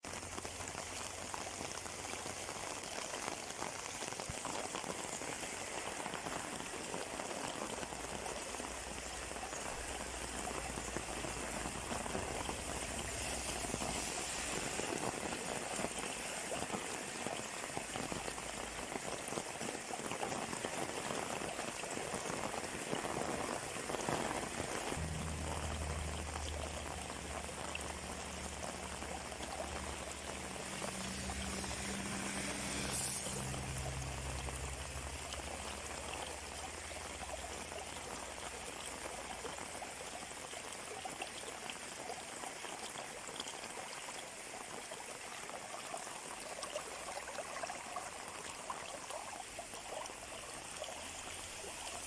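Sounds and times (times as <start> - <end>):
heavy rain on an umbrella: 0.0 - 40.9.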